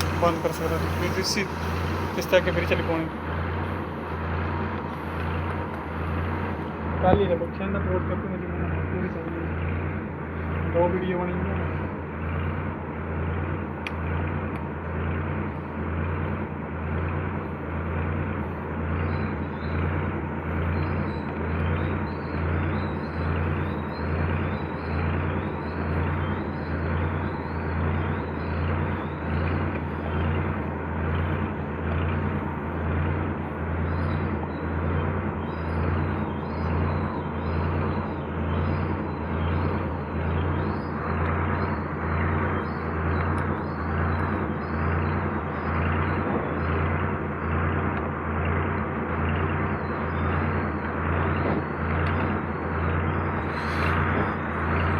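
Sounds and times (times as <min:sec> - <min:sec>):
hissing noise: 0:00.0 - 0:03.0, 0:53.5 - 0:54.2
throbbing machine drone: 0:00.0 - 0:54.9.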